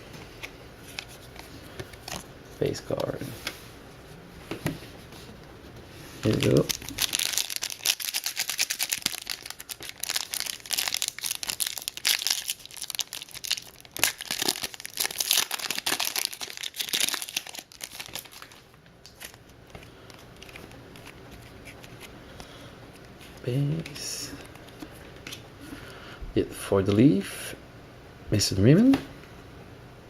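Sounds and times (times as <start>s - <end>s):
wrapper tearing and crinkling: 6.2s - 21.9s.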